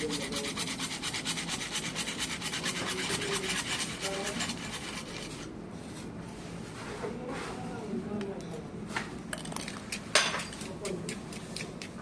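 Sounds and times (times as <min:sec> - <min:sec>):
hand tool rasping on pipe: 0:00.0 - 0:05.5.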